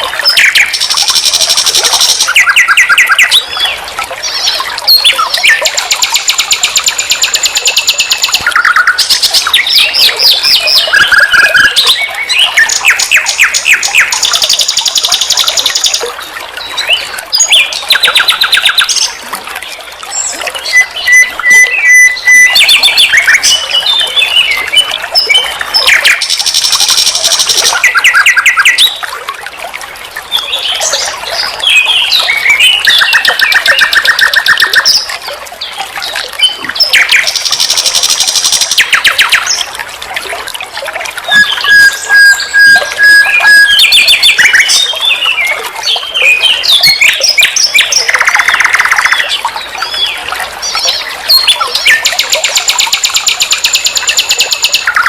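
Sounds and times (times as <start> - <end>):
nightingale singing: 41.3 - 44.9.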